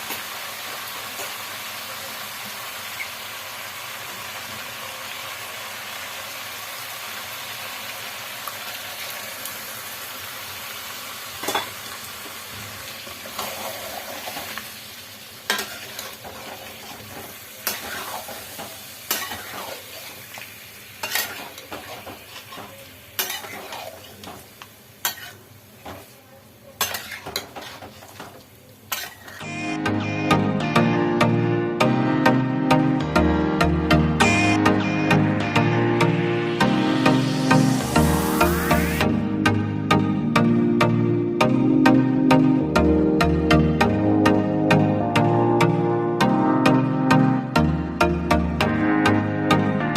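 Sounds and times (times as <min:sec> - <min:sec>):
curry sizzling in a pan: 0:00.0 - 0:29.5, 0:36.7 - 0:39.0
spoon scraping a pan: 0:15.5 - 0:20.4, 0:21.0 - 0:26.1, 0:26.8 - 0:29.4.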